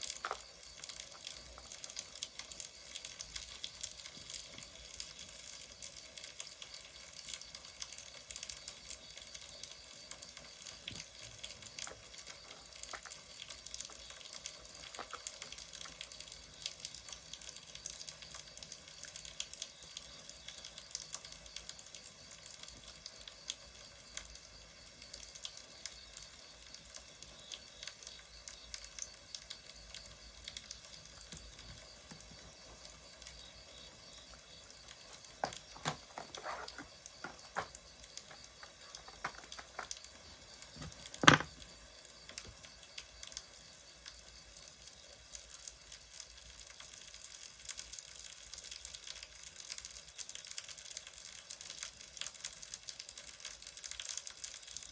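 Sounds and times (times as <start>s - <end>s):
wood fire crackling: 0.0s - 54.9s.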